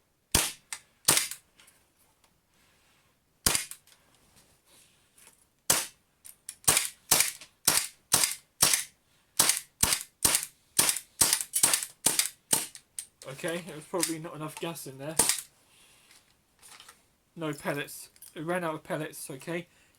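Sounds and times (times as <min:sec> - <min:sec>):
airsoft pistol shots: 0:00.3 - 0:01.4, 0:03.5 - 0:03.8, 0:05.7 - 0:06.0, 0:06.7 - 0:12.7.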